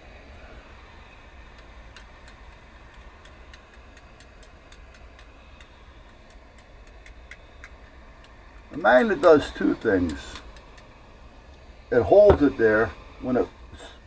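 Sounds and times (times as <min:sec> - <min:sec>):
low hum: 0:00.0 - 0:14.0
light fast ticking: 0:00.8 - 0:11.6.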